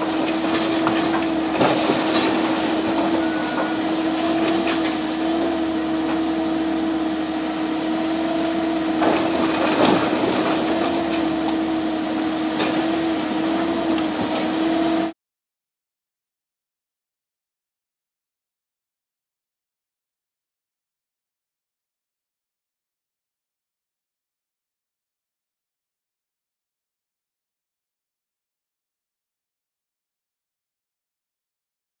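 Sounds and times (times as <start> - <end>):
demolition machine whining: 0.0 - 15.1.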